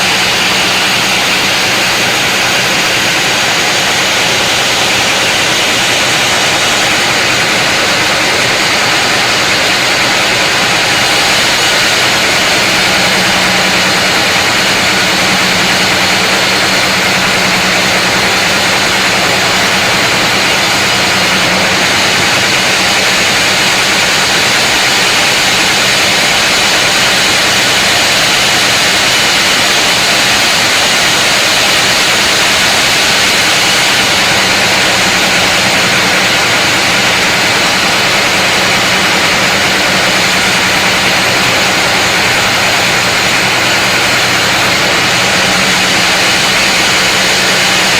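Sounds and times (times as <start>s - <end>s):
low machine hum: 0.0s - 47.9s
sawmill saw cutting log: 0.0s - 47.9s.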